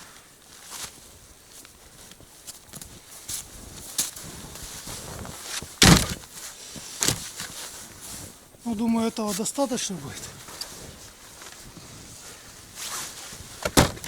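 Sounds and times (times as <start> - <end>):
footsteps in snow: 0.0 - 13.6
firewood cracking: 3.7 - 9.5
loud thump: 5.8 - 6.2, 13.6 - 14.0.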